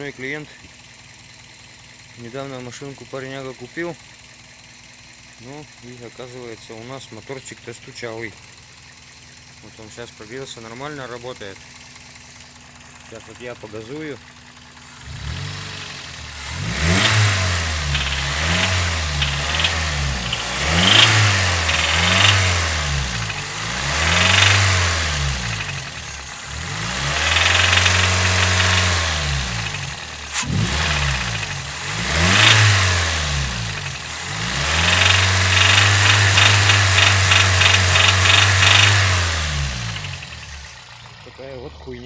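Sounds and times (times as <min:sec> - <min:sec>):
car engine revving: 0:14.1 - 0:41.4
rapid engine knock: 0:15.9 - 0:41.8.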